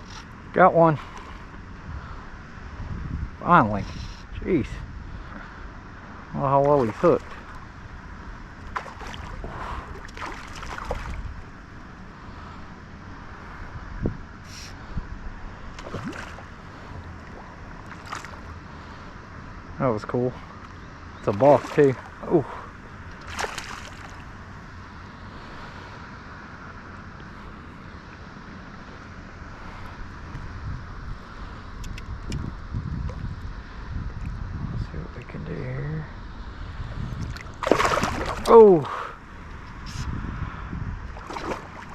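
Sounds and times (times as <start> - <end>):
wind buffeting microphone: 0.0 - 24.7, 29.3 - 41.9
rushing water: 6.2 - 7.7, 8.5 - 11.5, 15.5 - 18.6, 21.2 - 24.5, 37.2 - 39.9, 41.1 - 41.9
handling or splashing sounds: 6.6 - 7.5, 8.6 - 11.3, 15.8 - 16.6, 21.2 - 24.3, 37.2 - 38.9, 41.1 - 41.9.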